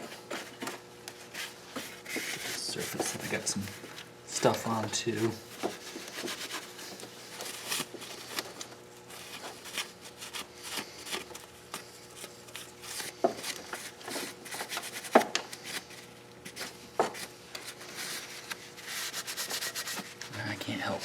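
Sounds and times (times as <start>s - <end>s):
paper towel wiping metal: 17.6s - 20.5s.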